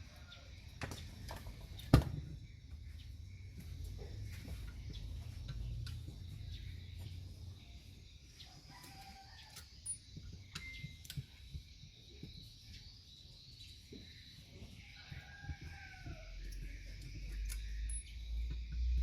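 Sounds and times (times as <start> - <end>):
rooster crowing: 8.4 - 9.8, 14.6 - 17.5.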